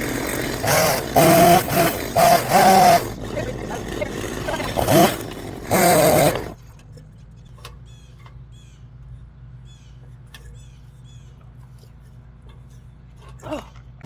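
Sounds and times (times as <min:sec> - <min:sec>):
loud rustling: 0:00.0 - 0:06.6.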